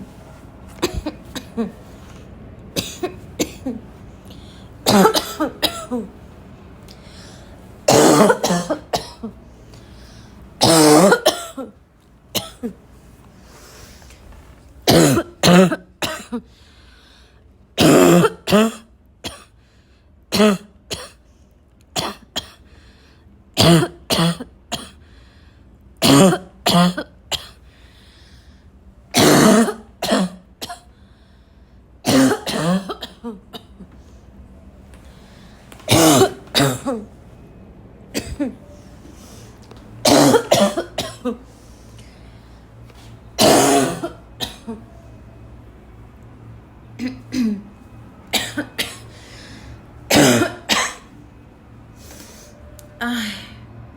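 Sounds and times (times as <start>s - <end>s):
person barking cough: 0.8s - 1.8s, 2.8s - 3.8s, 4.9s - 6.1s, 7.9s - 9.3s, 10.6s - 11.7s, 12.4s - 12.8s, 14.9s - 16.4s, 17.8s - 19.5s, 20.3s - 21.2s, 23.6s - 25.0s, 26.0s - 27.6s, 29.2s - 30.9s, 32.0s - 33.7s, 35.9s - 37.0s, 38.2s - 38.6s, 40.0s - 41.4s, 43.4s - 44.8s, 50.1s - 51.1s
throat clearing: 0.8s - 1.8s.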